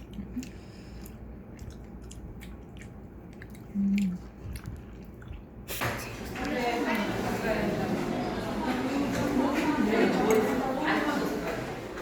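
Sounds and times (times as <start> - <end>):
chewing soft sweet: 0.0 - 5.8
wet mouth clicks: 0.0 - 5.8.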